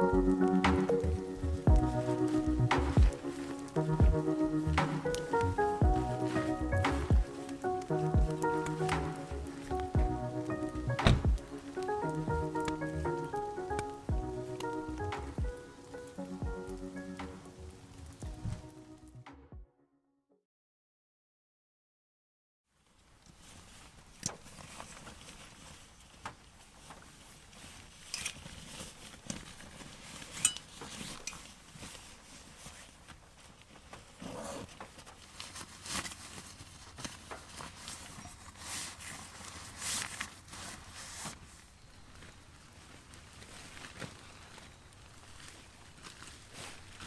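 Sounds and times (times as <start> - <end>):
footsteps: 0.0 - 18.8
steady low hiss: 0.0 - 19.2
camping gear clattering: 24.0 - 47.0.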